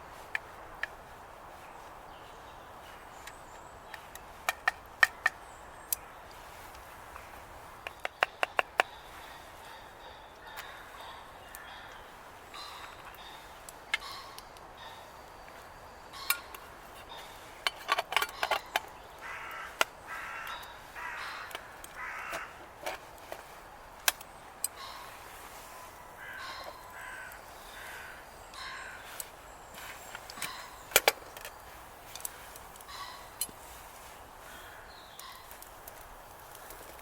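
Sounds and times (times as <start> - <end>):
sharp clicks and knocks: 3.2 - 6.0, 6.7 - 9.0
crow cawing: 8.9 - 15.1, 18.4 - 22.7, 24.7 - 29.3, 32.8 - 33.8, 34.4 - 35.6.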